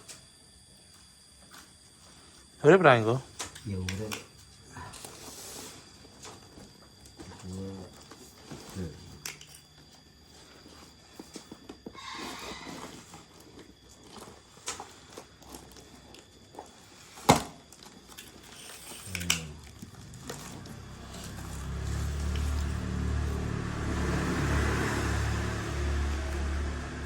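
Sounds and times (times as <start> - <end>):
low motor-like hum: 12.6 - 27.0.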